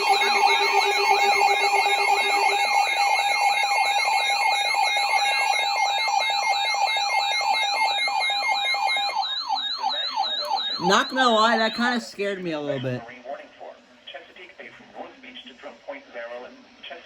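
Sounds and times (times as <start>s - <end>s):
fast-warbling high tone: 0.0s - 12.0s
siren-like sweeping tone: 0.0s - 12.0s
steady beeping tones: 0.0s - 12.8s.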